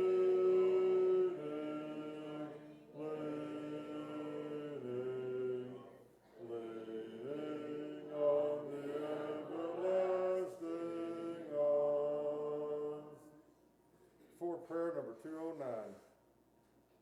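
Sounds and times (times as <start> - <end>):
congregation singing a hymn: 0.0 - 13.4.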